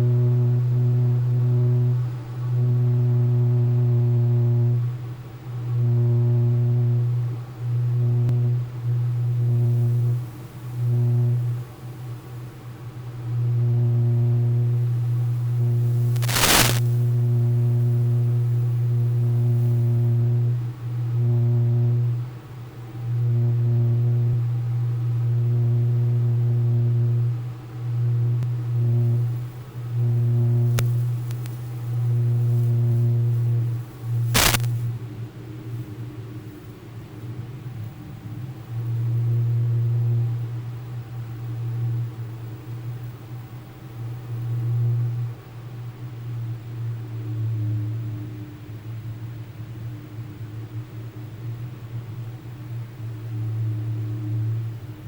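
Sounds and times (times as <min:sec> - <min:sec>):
low electronic buzz: 0:00.0 - 0:05.0, 0:05.6 - 0:12.4, 0:13.2 - 0:22.3, 0:23.0 - 0:35.0
sharp crackle: 0:15.7 - 0:18.7, 0:30.1 - 0:34.9.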